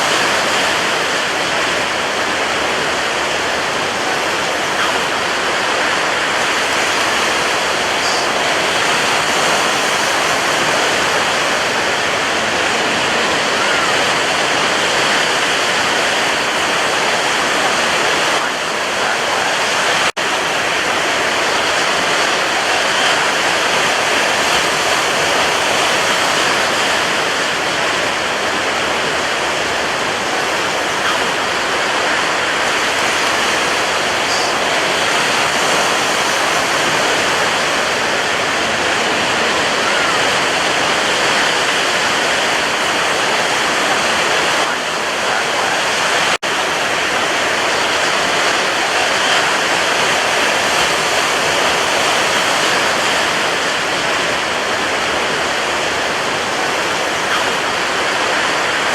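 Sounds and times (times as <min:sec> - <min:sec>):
surf rushing: 0:00.0 - 0:58.9.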